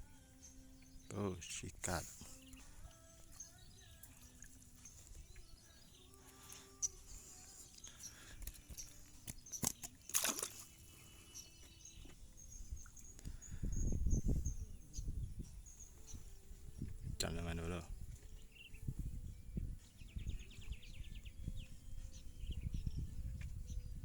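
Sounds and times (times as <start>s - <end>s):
water sloshing and splashing: 8.4s - 11.2s.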